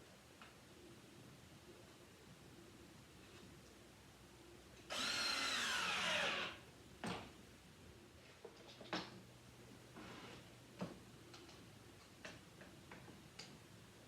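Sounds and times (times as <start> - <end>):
power drill running: 4.9 - 6.6.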